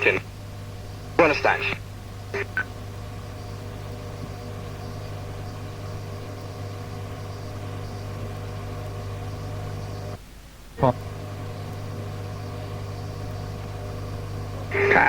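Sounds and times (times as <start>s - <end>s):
electrical hum with tones: 0.0s - 15.0s
faint radio hiss: 0.0s - 15.0s.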